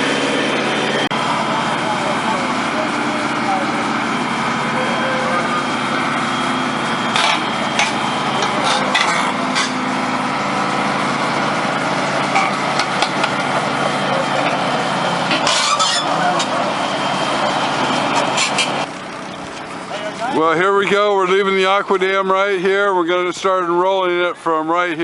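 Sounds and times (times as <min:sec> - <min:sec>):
excavator engine running: 0:00.0 - 0:25.0
clanks and knocks: 0:07.1 - 0:09.8, 0:12.3 - 0:13.6.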